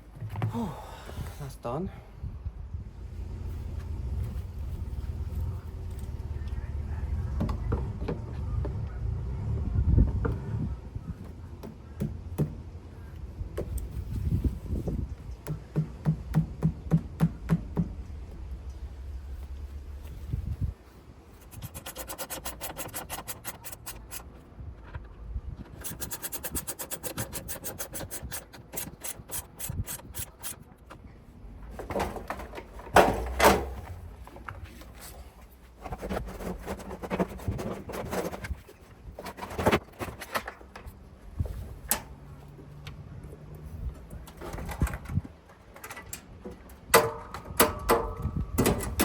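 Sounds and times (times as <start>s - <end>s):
knocks bumps and scraping of panels: 6.9s - 20.7s, 31.6s - 42.2s, 43.8s - 49.0s
rapid ratchet-like clicking: 21.4s - 24.3s, 25.8s - 30.6s.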